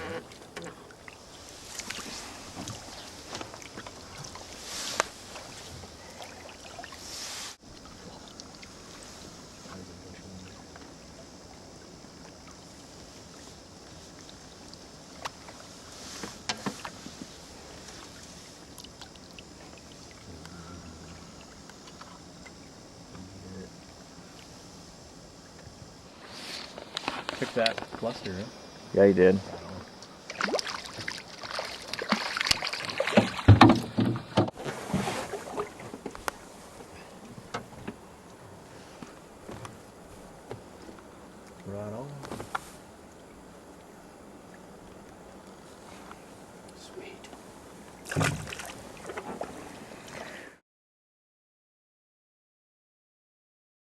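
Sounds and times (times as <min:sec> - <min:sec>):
knocks and clatters in a boat: 0:00.0 - 0:01.0, 0:01.8 - 0:06.4, 0:15.1 - 0:18.2, 0:30.9 - 0:42.7, 0:47.2 - 0:50.0
water sloshing: 0:00.0 - 0:28.2, 0:29.4 - 0:50.4
river water rushing: 0:30.1 - 0:33.5.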